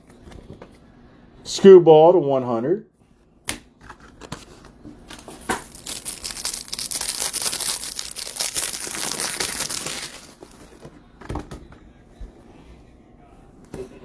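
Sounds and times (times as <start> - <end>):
foil wrapper crinkling and tearing: 5.1 - 10.8.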